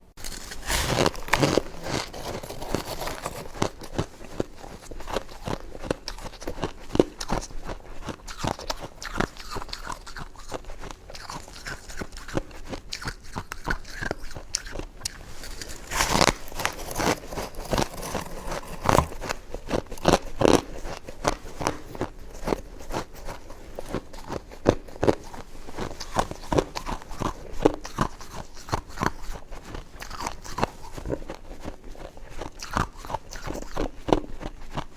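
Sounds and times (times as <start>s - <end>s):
chewing crunchy ice: 0.2s - 34.9s.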